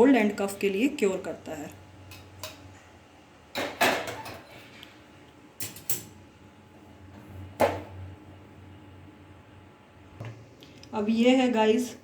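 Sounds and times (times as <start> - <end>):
kitchen utensils clinking: 3.6 - 4.8, 5.6 - 6.2.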